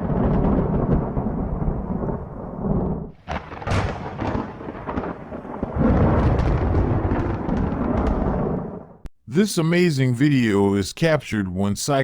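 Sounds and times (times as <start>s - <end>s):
sharp thunder crack: 0.0s - 9.0s
thunder rumbling: 0.0s - 9.1s.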